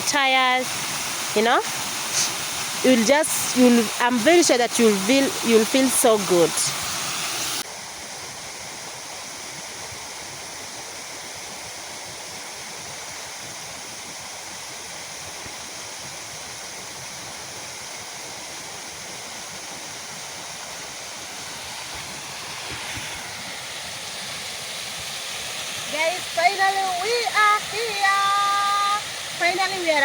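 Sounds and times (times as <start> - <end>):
waterfall rushing: 0.0 - 7.6, 18.2 - 30.0.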